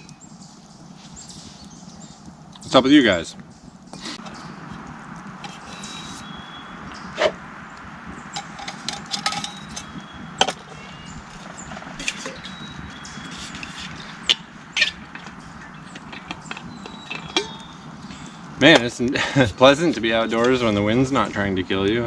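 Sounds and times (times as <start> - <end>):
steady hiss: 0.0 - 22.0
camp gear clicking and clinking: 8.4 - 10.7.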